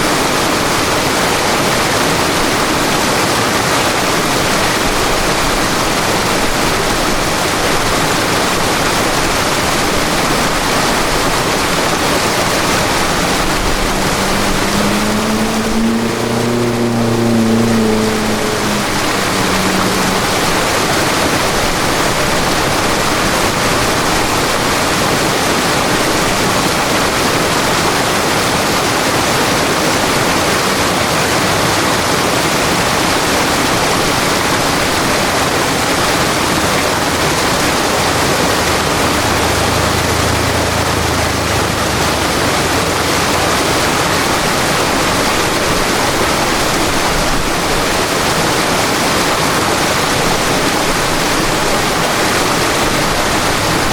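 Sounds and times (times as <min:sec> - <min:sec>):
river water rushing: 0:00.0 - 0:53.9
faint low drone: 0:11.8 - 0:24.7.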